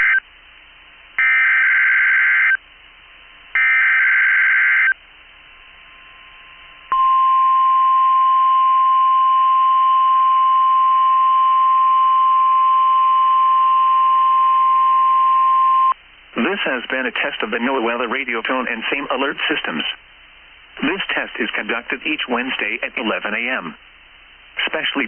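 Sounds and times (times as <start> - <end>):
steady warning alarm tone: 1.2 - 2.6, 3.6 - 5.0.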